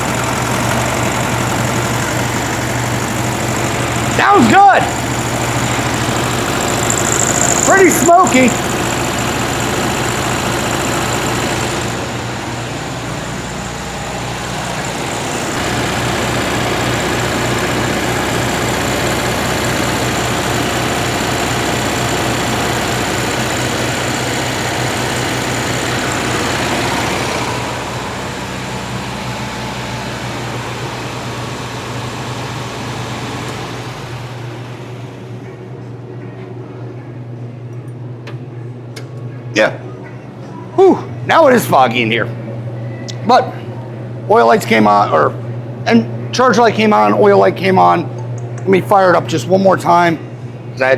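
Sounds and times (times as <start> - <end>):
air-cooled car engine running: 0.0 - 35.7.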